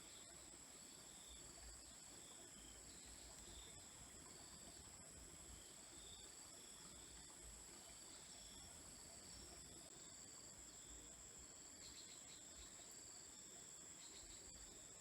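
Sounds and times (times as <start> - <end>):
lower insect chirps: 7.9 - 15.0.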